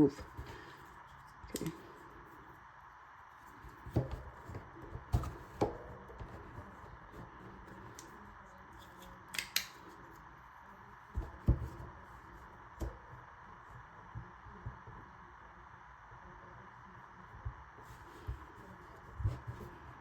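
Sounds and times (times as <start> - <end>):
faint steady hum: 0.0 - 20.0
magnet clamp clicks: 9.0 - 9.8.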